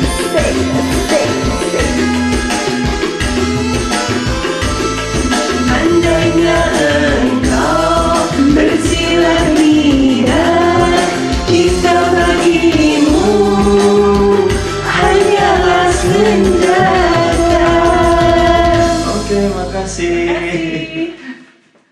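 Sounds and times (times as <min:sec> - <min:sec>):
person singing karaoke: 0:00.0 - 0:21.9
recorded backing track: 0:00.0 - 0:21.9.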